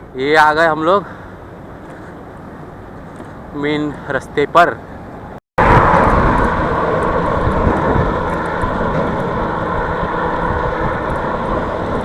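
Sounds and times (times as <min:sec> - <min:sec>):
wind and road noise from bicycle: 0:00.0 - 0:12.0.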